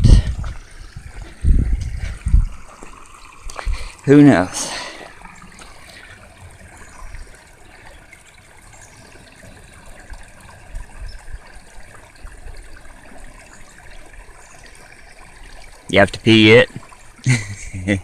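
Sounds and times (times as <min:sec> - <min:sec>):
dull low bumps: 0:00.0 - 0:02.9
creek trickling and splashing: 0:00.0 - 0:18.0.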